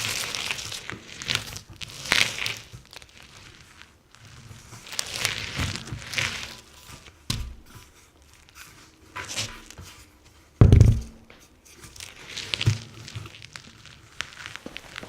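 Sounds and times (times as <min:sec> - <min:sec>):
rubber tire scuffing on concrete: 0:04.4 - 0:15.0
heavy thud: 0:10.6 - 0:11.3
tire thumping: 0:10.6 - 0:11.3.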